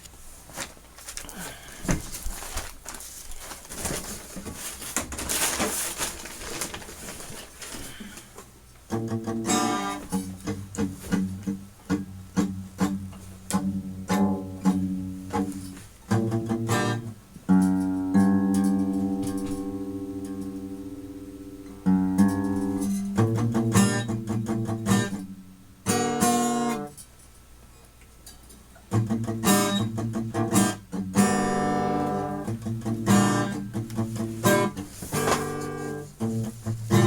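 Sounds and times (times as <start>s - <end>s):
guitar chords strummed: 8.9s - 27.0s, 28.9s - 37.0s.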